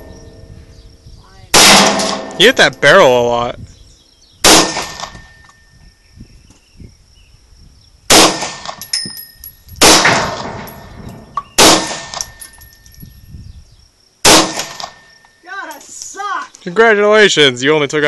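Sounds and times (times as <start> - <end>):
pistol shots with ringing: 1.5 - 3.2, 4.4 - 5.4, 8.1 - 12.7, 14.2 - 15.2.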